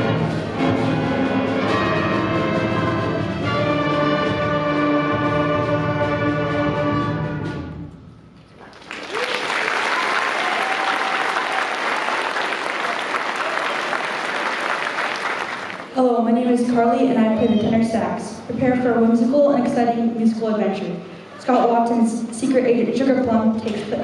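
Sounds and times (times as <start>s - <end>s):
audience applause: 8.6s - 15.9s.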